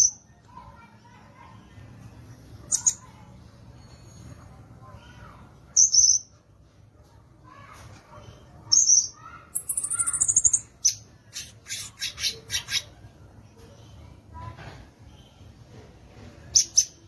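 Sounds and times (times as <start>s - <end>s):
fast high bird chatter: 2.6s - 3.4s, 8.3s - 13.1s.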